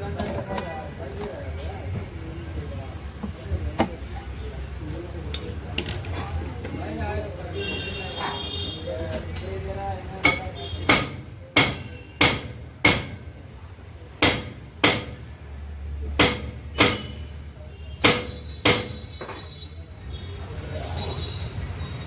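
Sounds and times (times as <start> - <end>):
hammer striking metal: 10.2 - 13.3, 14.2 - 15.3, 16.2 - 17.2, 18.0 - 19.4.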